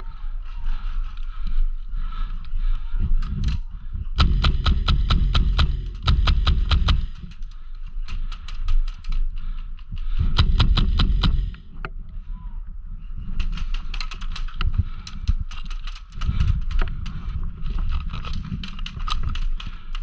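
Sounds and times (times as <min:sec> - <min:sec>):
heavy footsteps thudding: 0:04.2 - 0:07.3, 0:10.4 - 0:11.6
airsoft guns firing: 0:04.2 - 0:07.6, 0:10.3 - 0:11.6.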